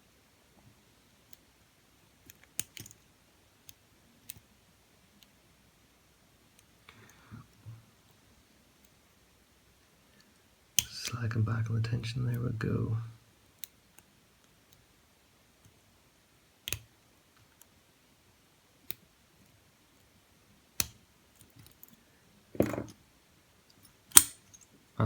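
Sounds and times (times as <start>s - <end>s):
lock pick clicking on pins: 2.3s - 3.0s, 16.6s - 16.9s, 24.1s - 24.6s
padlock clicking open: 24.1s - 24.4s.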